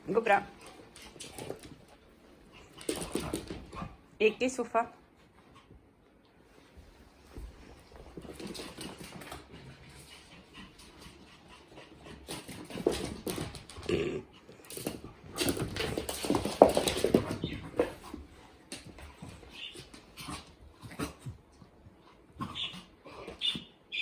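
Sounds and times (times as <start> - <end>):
dogs scuffling: 0.0 - 23.7
dogs whining: 22.4 - 24.0.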